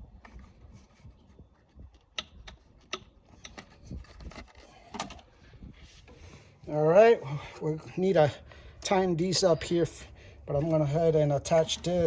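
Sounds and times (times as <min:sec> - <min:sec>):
clicks and knocks of parts handled: 0:01.6 - 0:05.3.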